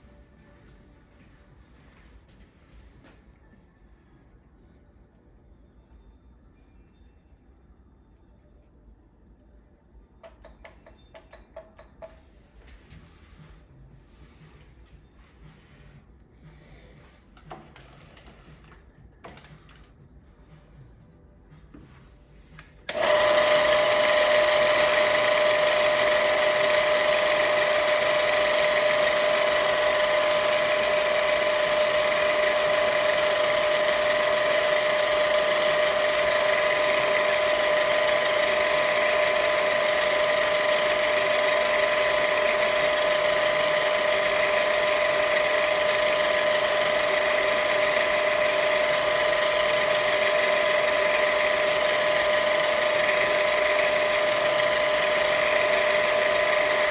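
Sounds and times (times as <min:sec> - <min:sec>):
milling machine whining: 0:22.6 - 0:56.9.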